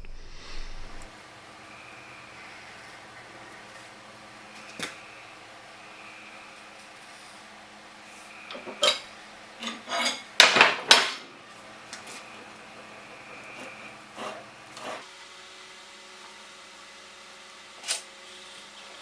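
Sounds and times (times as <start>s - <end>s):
metal tools clinking: 8.5s - 11.2s.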